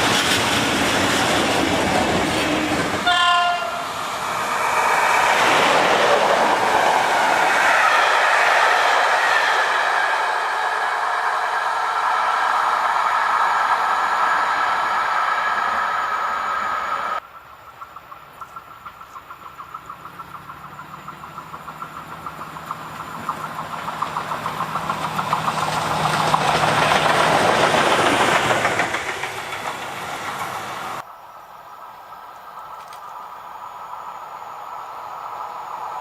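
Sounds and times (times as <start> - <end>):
train passing on track: 0.0 - 36.0
train wheel clicks: 18.4 - 30.9.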